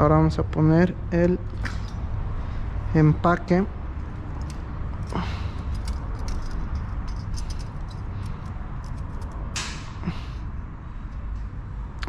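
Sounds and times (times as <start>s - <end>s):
steady low hum: 0.0s - 12.0s
engine parts clicking and tapping: 1.5s - 2.1s, 3.9s - 10.0s.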